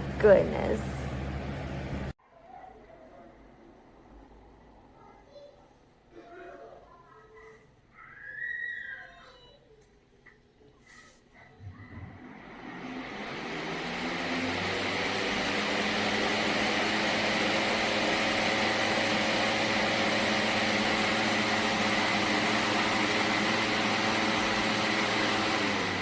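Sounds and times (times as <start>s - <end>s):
box fan running: 0.0s - 2.1s, 11.6s - 26.0s.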